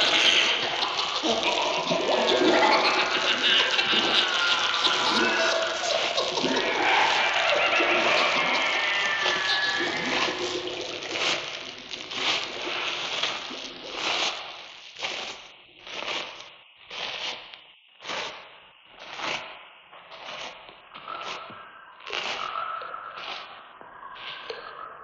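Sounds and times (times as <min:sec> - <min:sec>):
rhythmic scraping strokes: 0:00.0 - 0:13.4.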